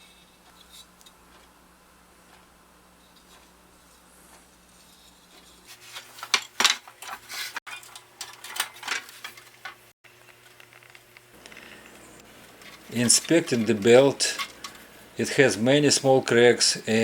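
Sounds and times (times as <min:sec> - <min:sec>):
faint steady hum: 0:00.0 - 0:07.3, 0:07.9 - 0:17.0
metal parts and tools clinking: 0:06.2 - 0:09.8, 0:12.6 - 0:14.8.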